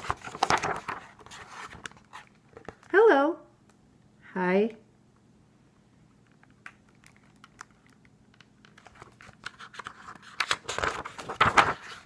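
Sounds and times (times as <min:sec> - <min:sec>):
paper page crinkling and rustling: 0:00.0 - 0:02.9, 0:06.9 - 0:12.0.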